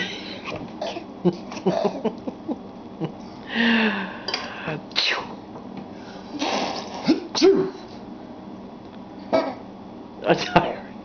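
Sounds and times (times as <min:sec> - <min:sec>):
breathy burst: 0:03.5 - 0:04.9.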